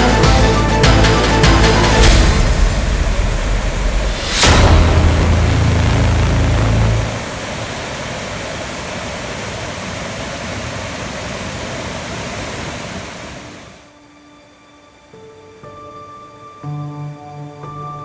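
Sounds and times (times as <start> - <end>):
waterfall rushing: 0.0 - 13.9
faint music: 13.8 - 18.0.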